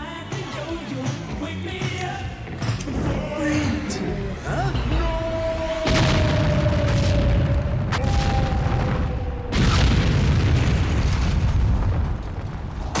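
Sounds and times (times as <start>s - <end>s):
heavy low rumble: 0.1s - 13.0s
explosion blasts: 2.9s - 13.0s
sharp crack: 4.8s - 13.0s.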